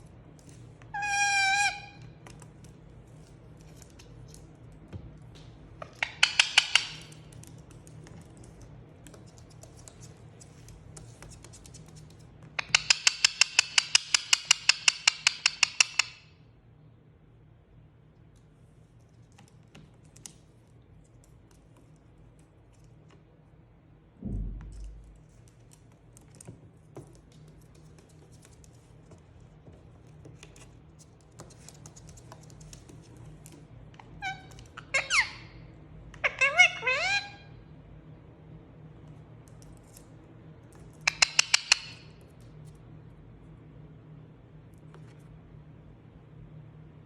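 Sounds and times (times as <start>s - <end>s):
parrot calling: 0.9s - 2.2s, 5.8s - 7.1s, 12.6s - 16.2s, 34.0s - 37.6s, 41.1s - 42.1s
rapid pulsed parrot calls: 1.0s - 2.0s.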